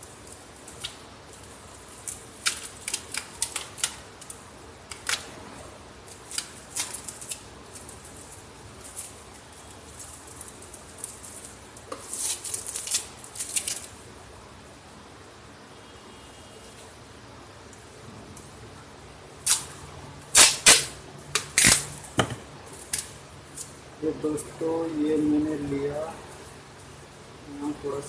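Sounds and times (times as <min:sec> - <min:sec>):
packing tape crackling: 0:00.0 - 0:05.3, 0:06.0 - 0:14.0, 0:20.3 - 0:23.7.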